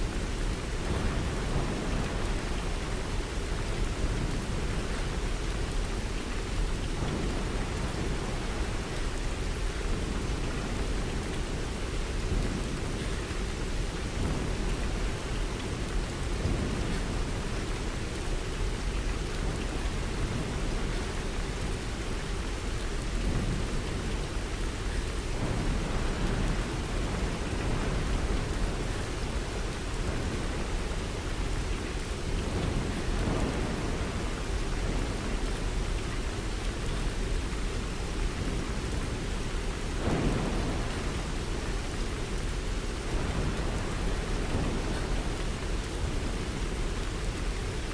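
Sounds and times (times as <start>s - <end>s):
steady rain falling: 0.0s - 47.9s.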